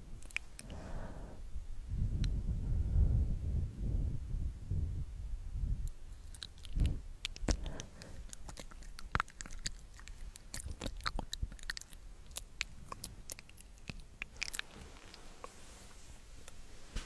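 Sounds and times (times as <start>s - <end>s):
wet mouth clicks and smacks: 0.2s - 0.8s, 5.8s - 15.2s.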